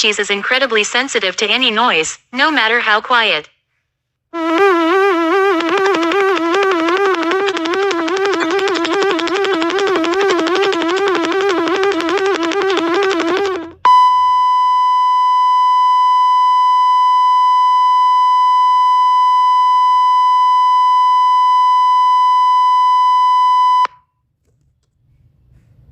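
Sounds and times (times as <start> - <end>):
wavering synthesized tone: 4.4 - 15.2
long steady electronic beep: 13.8 - 24.0.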